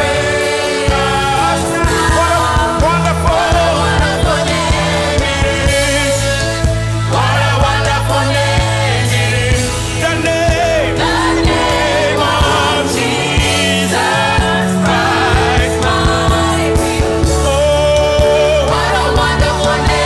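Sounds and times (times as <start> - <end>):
band with bass and drums: 0.0 - 20.0
voices singing: 0.0 - 20.0.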